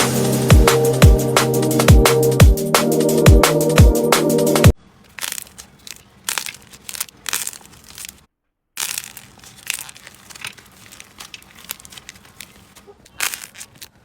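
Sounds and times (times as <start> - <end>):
slime crackling and popping: 5.1 - 14.0.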